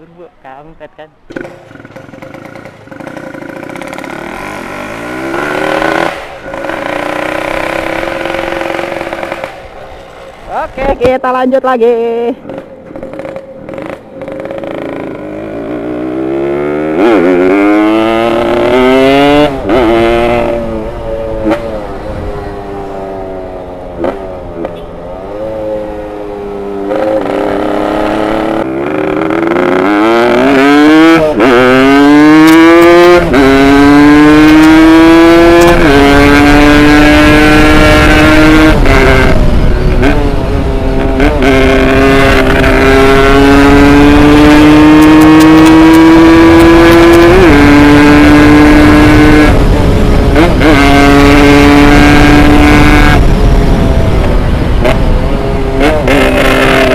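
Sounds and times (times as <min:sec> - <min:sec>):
motorcycle engine accelerating: 0:01.3 - 0:56.9.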